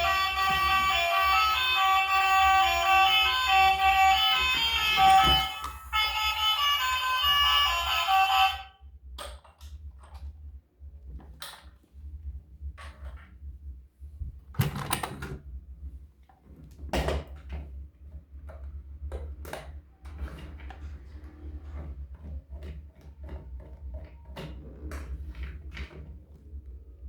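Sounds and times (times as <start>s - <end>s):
toys and packaging being handled: 0.0s - 8.6s.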